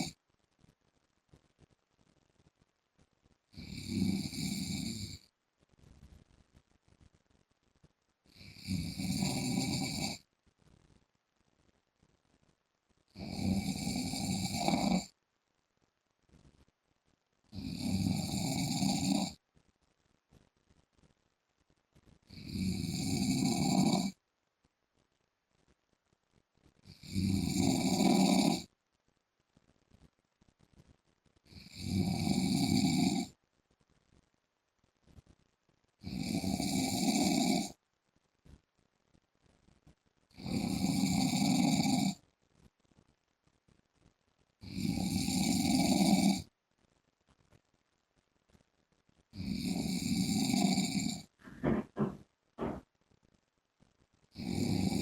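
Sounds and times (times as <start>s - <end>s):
man snoring loudly: 3.6s - 5.2s, 8.4s - 10.2s, 13.2s - 15.1s, 17.6s - 19.4s, 22.3s - 24.2s, 27.0s - 28.7s, 31.6s - 33.3s, 36.0s - 37.8s, 40.4s - 42.2s, 44.6s - 46.5s, 49.4s - 52.8s, 54.4s - 55.0s.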